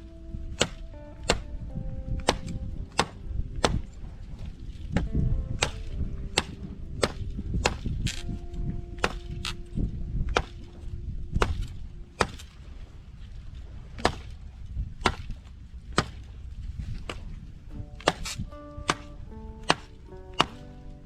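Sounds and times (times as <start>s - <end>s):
wind rumble on microphone: 0.0s - 21.0s
axe chopping wood: 0.6s - 1.5s, 2.2s - 3.8s, 5.0s - 8.2s, 9.0s - 9.6s, 10.3s - 10.6s, 11.4s - 12.4s, 14.0s - 14.3s, 15.0s - 15.3s, 16.0s - 16.2s, 18.0s - 20.6s.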